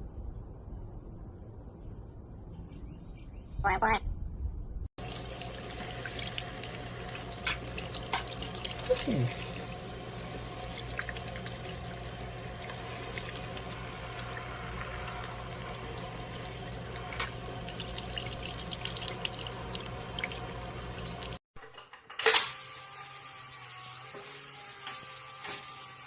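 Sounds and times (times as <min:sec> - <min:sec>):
low hum: 0:00.0 - 0:21.4
running water: 0:05.0 - 0:21.4
water drips: 0:05.0 - 0:21.4.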